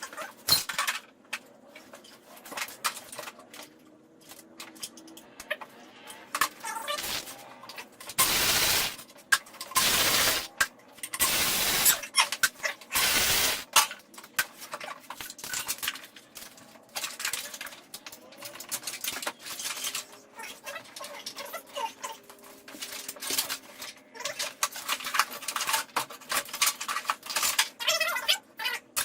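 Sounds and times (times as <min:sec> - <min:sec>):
pneumatic ratchet whirring: 0:07.0 - 0:07.3, 0:08.2 - 0:09.0, 0:09.8 - 0:10.5, 0:11.2 - 0:12.0, 0:13.0 - 0:13.7.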